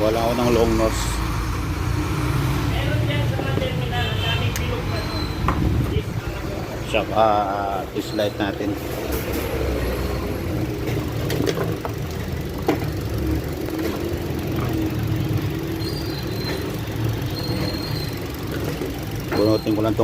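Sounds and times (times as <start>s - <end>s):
car engine idling: 0.0s - 20.0s.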